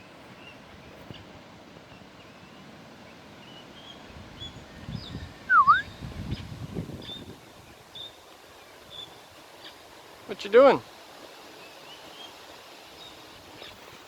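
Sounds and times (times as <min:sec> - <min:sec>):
loud whistle: 0:05.5 - 0:05.9.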